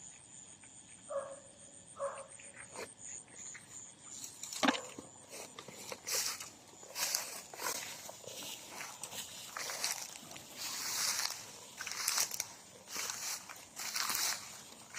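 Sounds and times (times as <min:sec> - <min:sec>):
insects chirping: 0:00.0 - 0:14.9
rustling: 0:04.2 - 0:14.9
footsteps: 0:04.5 - 0:14.9.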